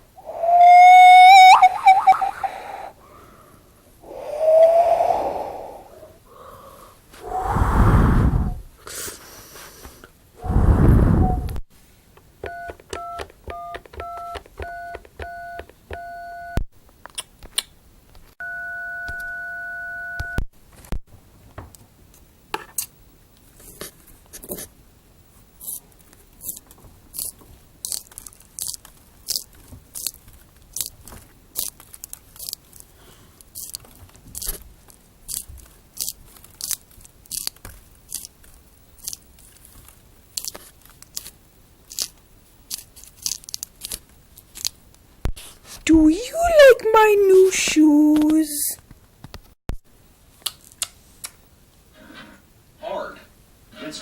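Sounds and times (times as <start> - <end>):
phone keypad dialing beeps: 12.4 - 16.6
crunchy chewing: 26.4 - 34.6, 35.2 - 44.8.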